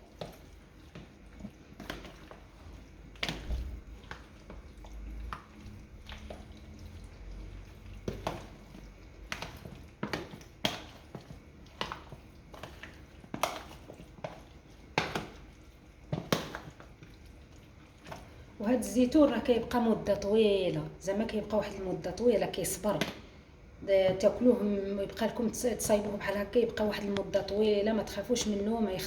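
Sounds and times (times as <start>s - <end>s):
olives clicking in marinade: 0.0s - 18.6s
wet squishing: 0.0s - 29.0s.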